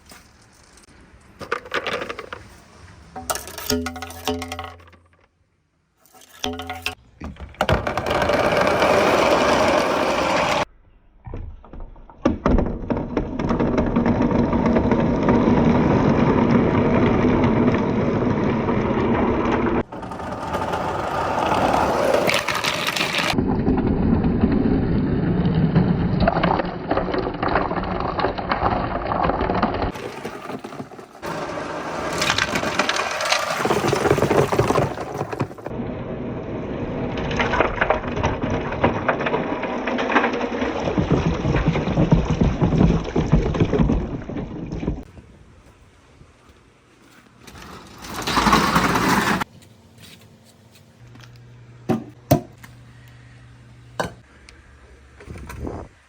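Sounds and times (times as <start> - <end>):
marbles rattling down wooden tracks: 12.9 - 23.4, 26.4 - 35.6, 37.2 - 44.3.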